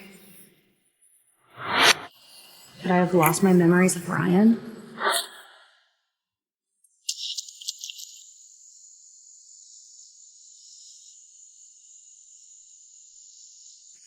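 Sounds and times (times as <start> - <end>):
high-pitched insect chorus: 7.1 - 14.0.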